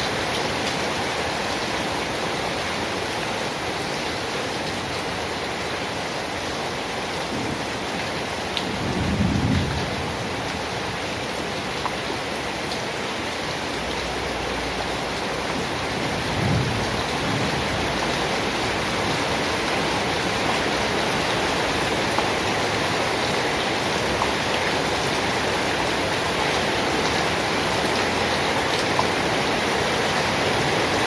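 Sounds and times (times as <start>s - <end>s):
rain falling: 0.0s - 31.0s
thunder rumbling: 8.6s - 10.4s, 16.1s - 18.1s.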